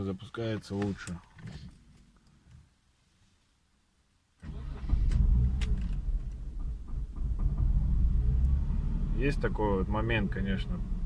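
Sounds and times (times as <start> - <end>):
car engine starting and running: 4.4 - 11.0.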